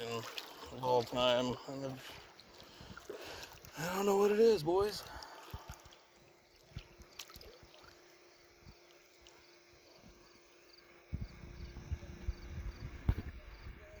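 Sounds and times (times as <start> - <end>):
insect chirps: 0.0 - 14.0
low rumble with bumps: 11.1 - 14.0.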